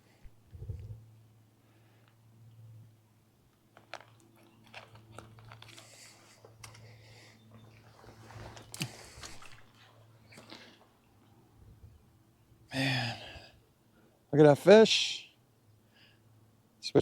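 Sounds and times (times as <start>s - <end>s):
crackling rustling handling noises: 3.7s - 6.8s.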